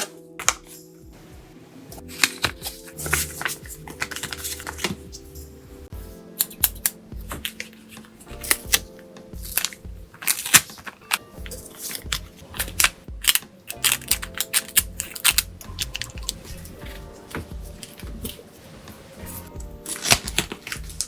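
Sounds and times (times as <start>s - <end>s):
soft background music: 0.0s - 21.0s
paper crinkling: 2.0s - 5.4s, 7.2s - 21.0s.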